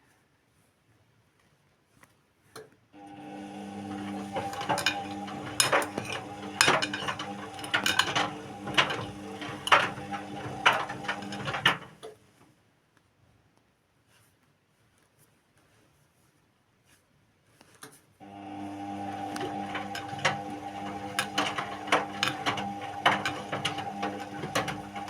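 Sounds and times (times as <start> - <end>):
washing machine motor hum: 3.0 - 12.1, 18.2 - 25.0
washing machine drum knocking: 3.7 - 11.9, 19.1 - 25.0.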